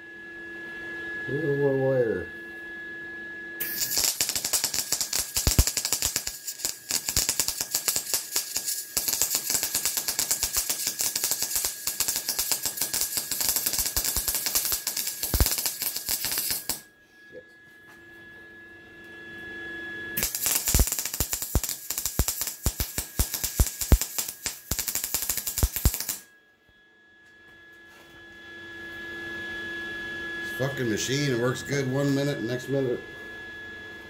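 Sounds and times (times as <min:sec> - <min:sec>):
welder arc crackling: 0:03.6 - 0:16.8, 0:20.2 - 0:26.2
steady hum: 0:03.6 - 0:17.0, 0:20.2 - 0:26.3.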